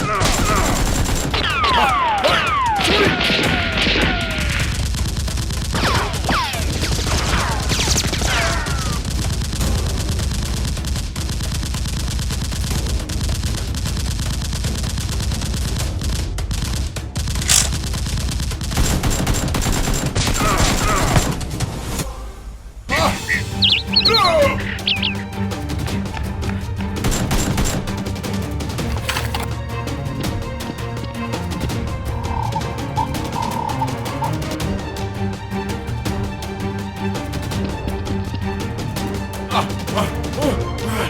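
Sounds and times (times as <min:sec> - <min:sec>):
rapid gunfire: 0:00.0 - 0:21.5, 0:27.0 - 0:28.1
falling whistling sweeps: 0:23.3 - 0:25.2.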